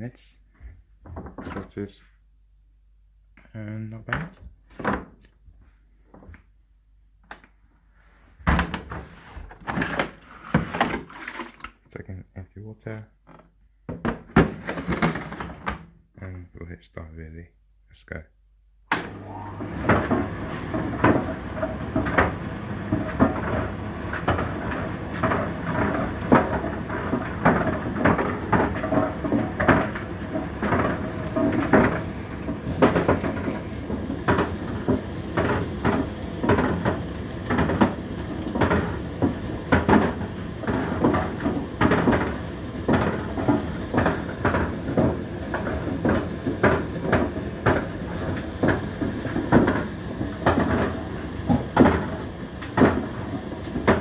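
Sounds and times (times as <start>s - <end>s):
tumble dryer motor hum: 18.9s - 54.0s
load tumbling and knocking: 24.2s - 53.1s.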